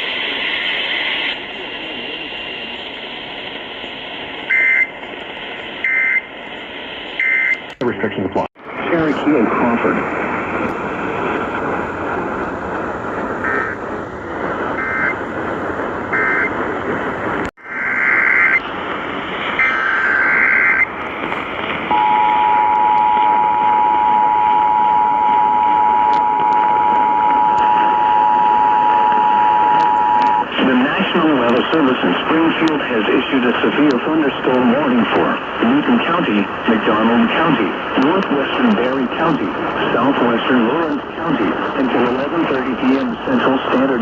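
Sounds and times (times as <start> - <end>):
radio static: 0.0 - 15.3, 16.1 - 44.0
screechy data bursts: 19.6 - 20.9
two-tone attention signal: 21.9 - 30.5.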